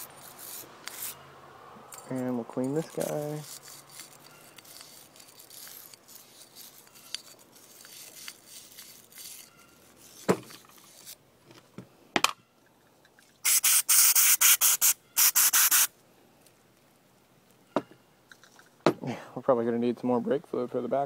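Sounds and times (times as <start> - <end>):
scratchy scrubbing strokes: 0.0 - 1.2, 2.4 - 11.2
soft rubbing: 2.0 - 11.2.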